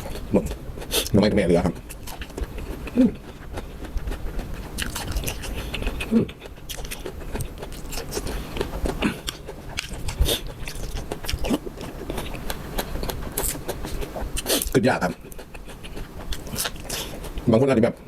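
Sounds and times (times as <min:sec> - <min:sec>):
food crunching: 0:00.0 - 0:17.5
person chewing food: 0:00.0 - 0:17.5
wet mouth clicks: 0:00.0 - 0:17.5
person grunting: 0:03.0 - 0:03.2.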